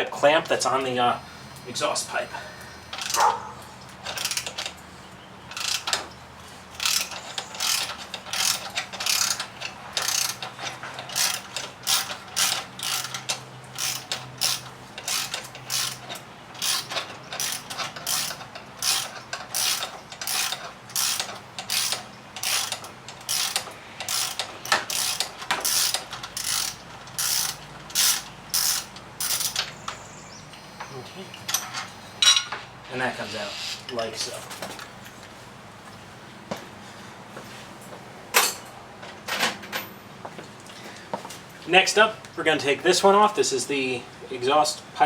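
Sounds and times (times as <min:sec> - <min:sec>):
socket ratchet clicking: 0:06.8 - 0:10.5.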